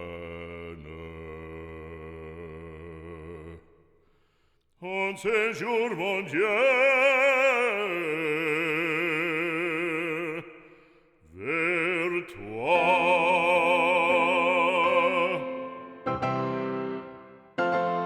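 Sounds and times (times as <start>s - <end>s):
operatic singing: 4.8s - 18.0s
piano chords: 12.8s - 18.0s.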